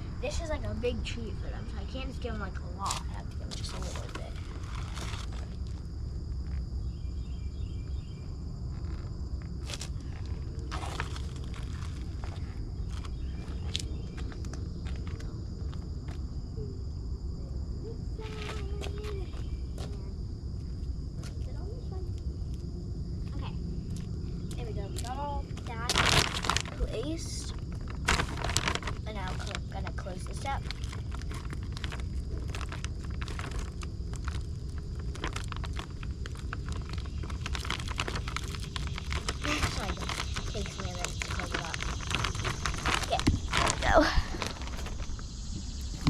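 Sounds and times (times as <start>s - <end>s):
steady low rumble: 0.0s - 46.0s
plastic bag crinkling: 25.8s - 46.0s.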